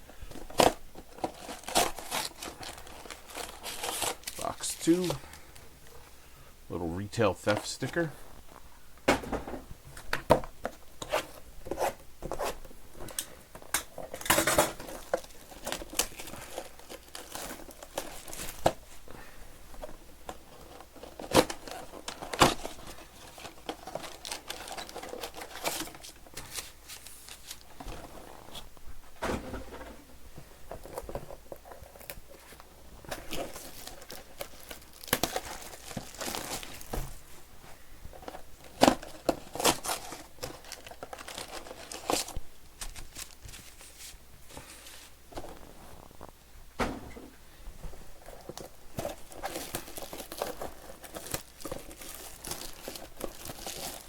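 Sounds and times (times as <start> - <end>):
rustling: 0.0 - 6.4, 9.9 - 54.0
plastic wrap tearing and crinkling: 0.3 - 5.4, 11.0 - 19.0, 20.2 - 28.7, 30.7 - 37.2, 38.2 - 44.2, 48.2 - 54.0
cardboard boxes ripping: 0.4 - 5.2, 14.6 - 18.8, 20.8 - 28.6, 30.8 - 37.2, 38.3 - 43.9, 48.2 - 54.0.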